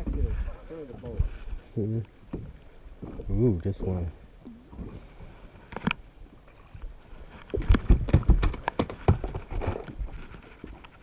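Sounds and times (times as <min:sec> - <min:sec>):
wind rumble on microphone: 0:00.0 - 0:01.8, 0:06.8 - 0:11.0
knocks and thumps against boat: 0:02.3 - 0:03.3, 0:07.4 - 0:10.2.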